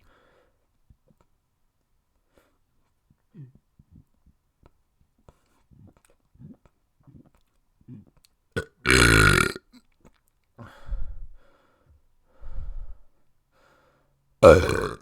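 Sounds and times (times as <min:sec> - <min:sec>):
person burping: 0:07.9 - 0:09.7, 0:14.4 - 0:15.0.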